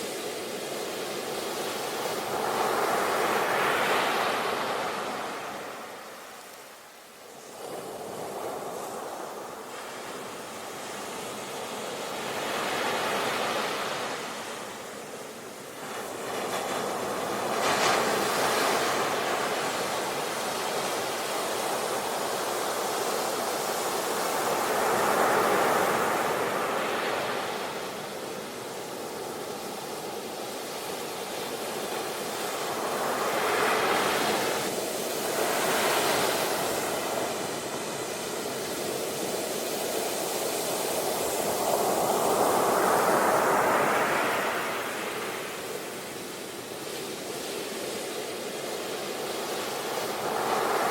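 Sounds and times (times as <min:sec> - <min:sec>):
ocean waves breaking on shore: 0:00.0 - 0:50.9.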